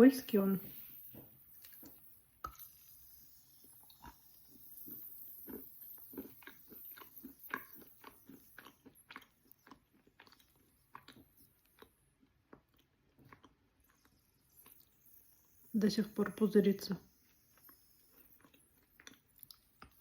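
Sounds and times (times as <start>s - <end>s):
wet chewing crunches: 3.9s - 15.0s, 17.2s - 20.0s.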